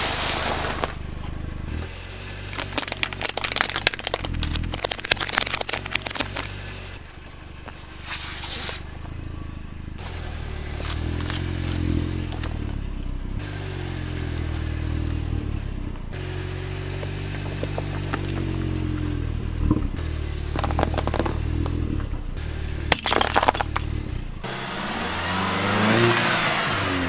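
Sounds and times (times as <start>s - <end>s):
short hiss: 0.0s - 1.0s, 7.7s - 9.0s, 10.8s - 11.9s
crackling and scraping: 0.0s - 12.9s, 16.9s - 22.2s
car engine running: 0.0s - 27.0s.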